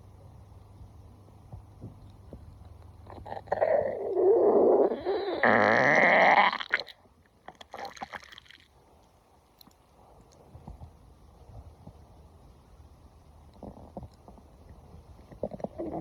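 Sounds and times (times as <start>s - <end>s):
stomach growling: 1.8s - 8.7s, 13.5s - 16.0s.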